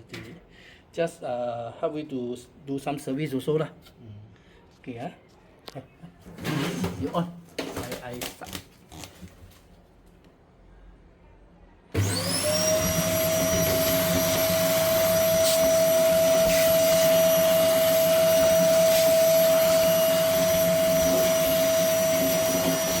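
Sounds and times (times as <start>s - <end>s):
cleaning machine motor whine: 12.0s - 23.0s.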